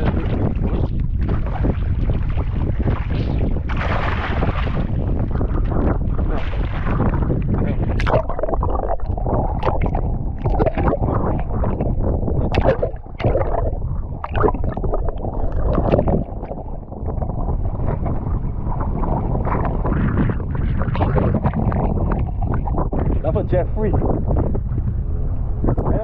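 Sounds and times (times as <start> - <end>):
water sloshing around a boat: 0.0 - 23.3
wind rumbling on microphone: 0.0 - 26.0
splashes: 1.2 - 5.0, 6.0 - 17.1.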